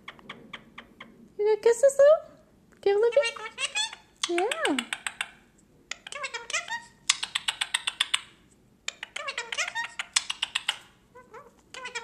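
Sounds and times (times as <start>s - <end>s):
parakeet warbling chatter: 3.1s - 8.3s, 8.9s - 12.0s
parakeet smacking clicks: 4.2s - 6.0s, 9.9s - 10.8s.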